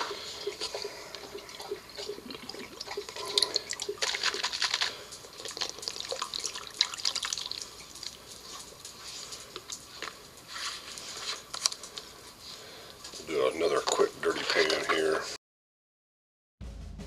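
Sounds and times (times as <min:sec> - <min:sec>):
water sloshing and splashing: 0:00.0 - 0:08.8.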